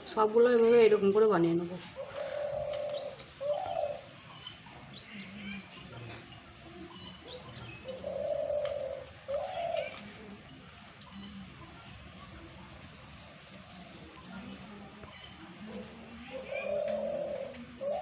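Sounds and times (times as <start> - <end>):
small birds chirping: 0.0 - 18.0
dove cooing: 1.8 - 5.7, 6.7 - 11.0, 15.3 - 18.0.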